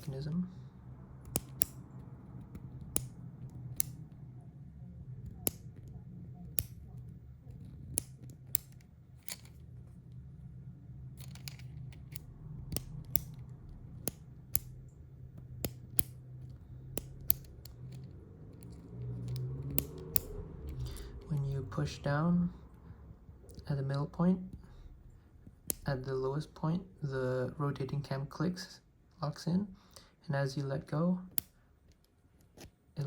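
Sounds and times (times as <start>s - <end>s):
low steady hum: 0.0s - 33.0s
pen button clicking: 1.2s - 1.8s.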